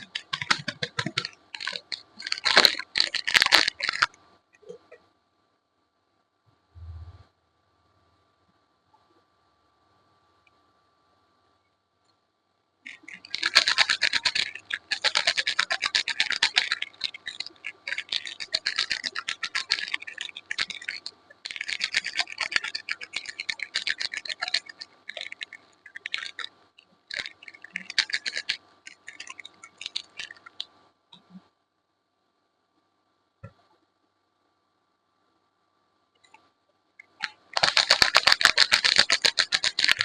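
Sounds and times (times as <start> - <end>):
soap being scraped: 12.9 - 26.5, 27.1 - 30.6.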